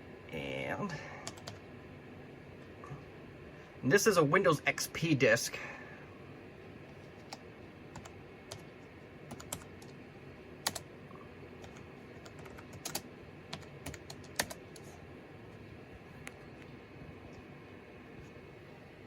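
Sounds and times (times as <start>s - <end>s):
computer keyboard typing: 1.2s - 1.6s, 7.2s - 8.7s, 9.3s - 10.0s, 10.6s - 10.9s, 11.6s - 15.0s.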